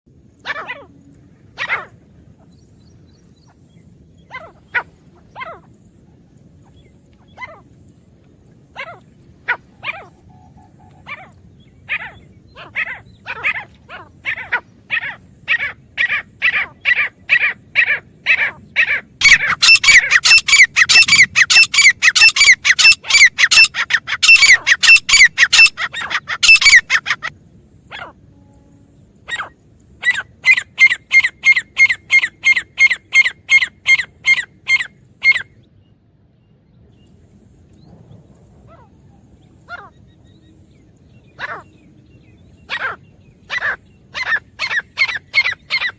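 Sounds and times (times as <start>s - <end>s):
bird calling high notes: 19.2s - 27.3s.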